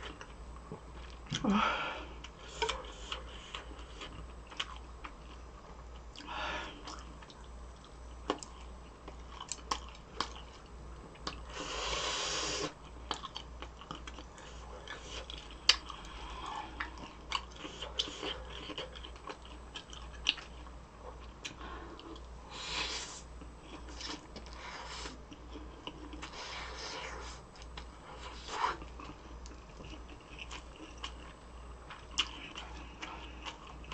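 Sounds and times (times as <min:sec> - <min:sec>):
steady low hum: 0:00.0 - 0:33.9
chewing with wet clicks: 0:02.2 - 0:11.5, 0:12.8 - 0:22.4, 0:25.3 - 0:26.5, 0:27.5 - 0:28.0, 0:28.8 - 0:33.9.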